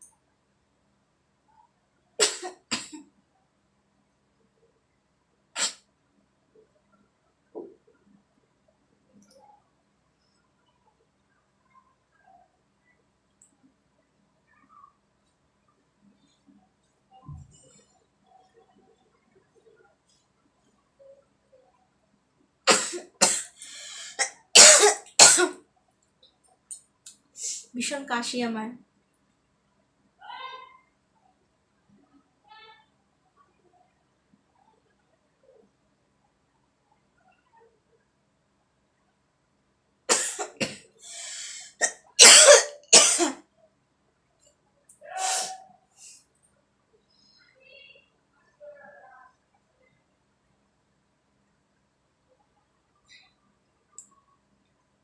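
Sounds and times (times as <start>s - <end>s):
woman coughing hard: 2.2s - 3.0s, 24.2s - 25.6s, 40.1s - 40.8s, 41.8s - 43.4s
rasping breath in: 23.6s - 24.2s, 41.0s - 41.8s.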